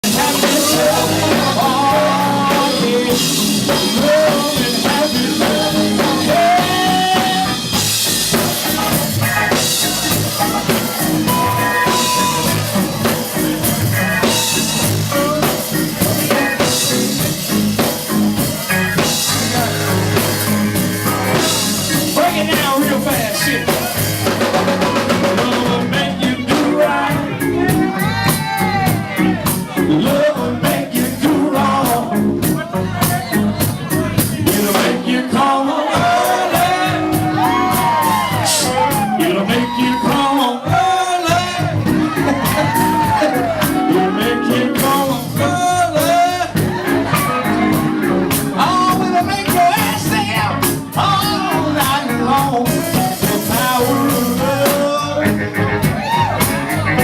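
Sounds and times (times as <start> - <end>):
busy drum kit: 0.0 - 57.0
live band playing soul-blues: 0.0 - 57.0
melodic lead line: 0.0 - 57.0.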